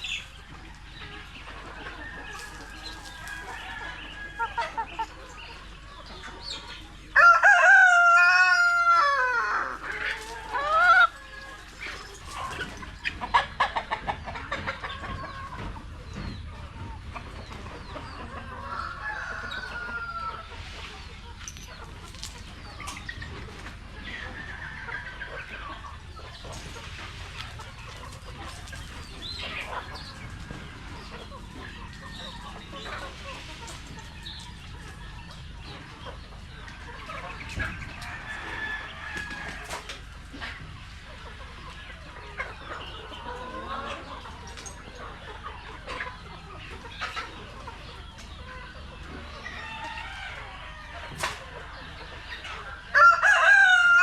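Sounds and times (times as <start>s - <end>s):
hens clucking: 0.0s - 54.0s
rooster crowing: 7.2s - 9.8s, 52.9s - 54.0s.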